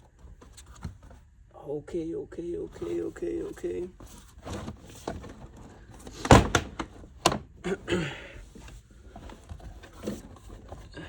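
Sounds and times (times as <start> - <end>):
plastic scraping: 2.7 - 7.6, 8.5 - 11.0
plastic trim knocking and thudding: 4.0 - 7.6.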